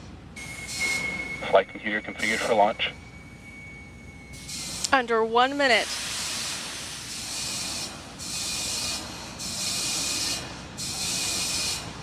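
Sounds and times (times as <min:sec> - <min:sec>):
gas venting hiss: 0:05.7 - 0:07.6.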